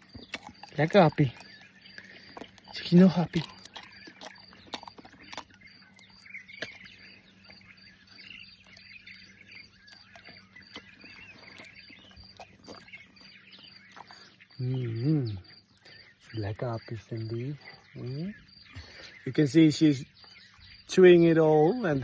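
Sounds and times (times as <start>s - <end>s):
baboon chewing food: 0.0s - 14.6s
birds twittering faintly: 0.0s - 22.0s.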